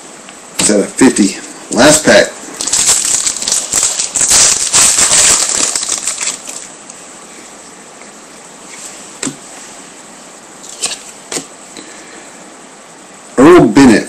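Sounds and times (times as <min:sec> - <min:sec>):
wrapper tearing and crinkling: 0:02.6 - 0:06.7.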